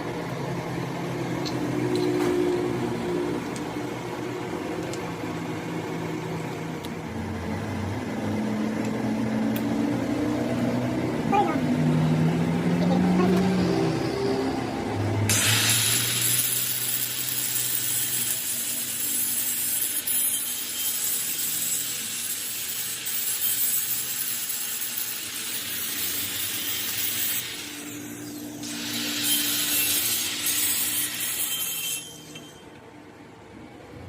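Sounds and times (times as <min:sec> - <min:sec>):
power tool scraping metal: 0:15.3 - 0:32.8.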